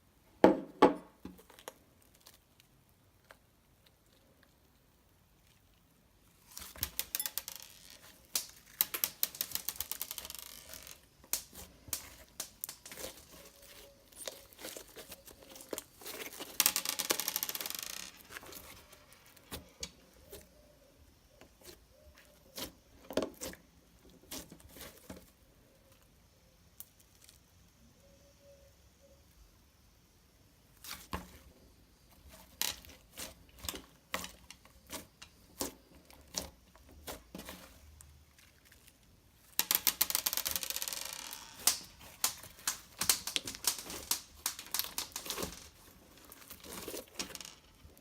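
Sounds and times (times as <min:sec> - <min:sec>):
slime crackling and popping: 0:05.4 - 0:19.6, 0:32.2 - 0:48.0.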